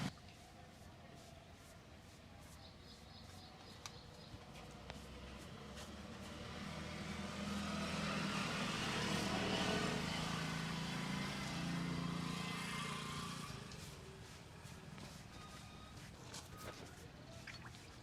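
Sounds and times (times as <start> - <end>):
vehicle engine passing by: 4.6 - 15.6.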